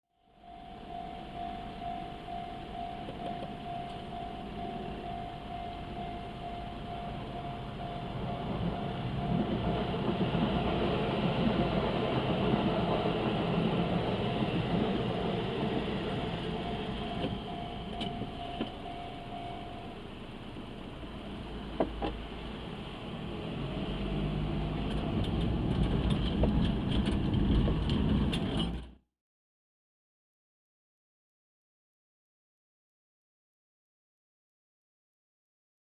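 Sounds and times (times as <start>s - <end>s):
steady high tone: 0.2s - 20.5s
electric train rumble: 0.4s - 29.0s
wheel clicks over rail joints: 24.8s - 28.9s.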